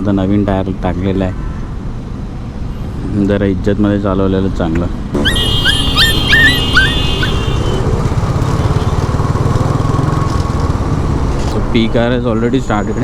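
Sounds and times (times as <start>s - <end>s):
dog yelping: 5.2s - 7.8s
motorcycle running: 5.2s - 11.9s.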